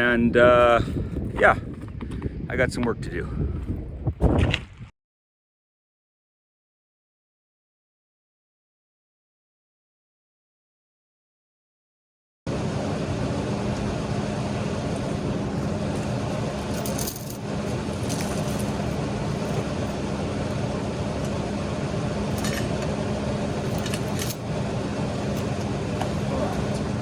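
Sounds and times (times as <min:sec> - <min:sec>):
machine hum: 0:12.5 - 0:27.0
metallic clinks and rattles: 0:16.4 - 0:20.0, 0:22.3 - 0:22.8, 0:23.5 - 0:24.4.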